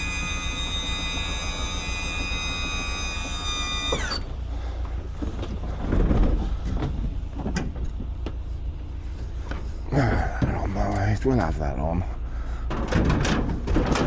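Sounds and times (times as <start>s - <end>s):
vehicle engine running: 0.0s - 12.9s
knocks and rattles: 12.6s - 14.0s.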